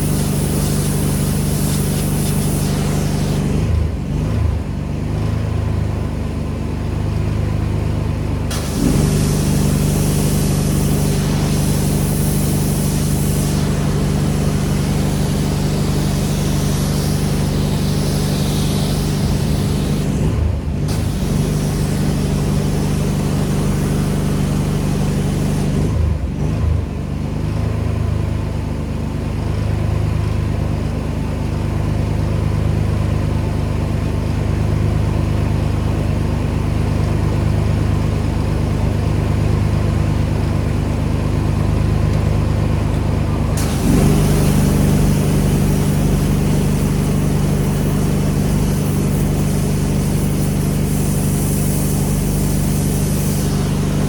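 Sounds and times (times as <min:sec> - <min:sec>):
high-pressure spray hissing: 0:00.0 - 0:03.7, 0:08.5 - 0:20.3, 0:20.9 - 0:25.8, 0:43.6 - 0:54.0
pressure washer engine hum: 0:00.0 - 0:26.5, 0:30.6 - 0:54.0.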